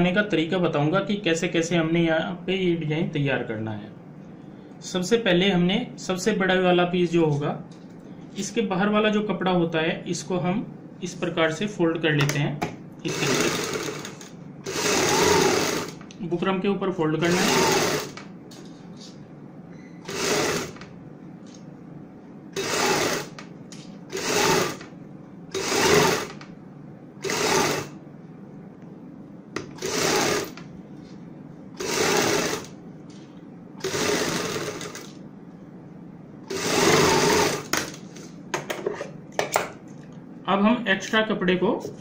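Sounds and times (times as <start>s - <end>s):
sewing machine stitching: 13.1s - 16.0s, 17.3s - 18.2s, 20.0s - 20.8s, 22.6s - 23.4s, 24.1s - 24.9s, 25.5s - 26.4s, 27.2s - 28.0s, 29.7s - 30.6s, 31.8s - 32.7s, 33.8s - 35.2s, 36.5s - 37.9s.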